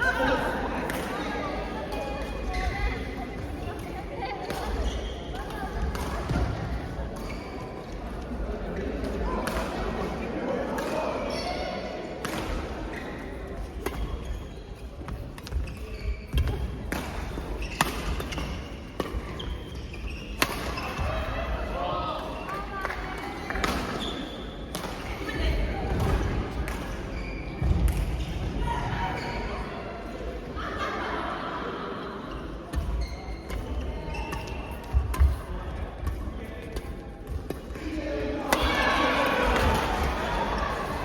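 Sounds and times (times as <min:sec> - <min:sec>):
murmur of voices: 0:00.0 - 0:14.3, 0:20.4 - 0:41.0
shoe squeaks on court floor: 0:07.2 - 0:07.8, 0:14.0 - 0:16.6, 0:17.6 - 0:21.1, 0:27.1 - 0:27.6, 0:32.7 - 0:35.3.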